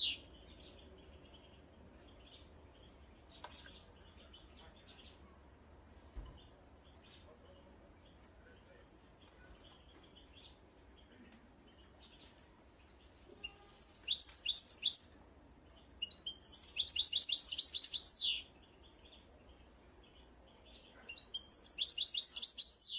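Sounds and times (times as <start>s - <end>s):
low outdoor hiss: 0.0s - 22.9s
songbird singing: 0.0s - 22.9s.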